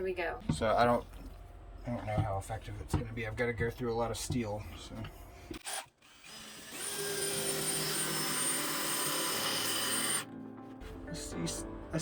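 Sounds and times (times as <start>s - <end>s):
electric drill whining: 5.5s - 10.3s
drill bit boring into steel: 5.6s - 10.2s.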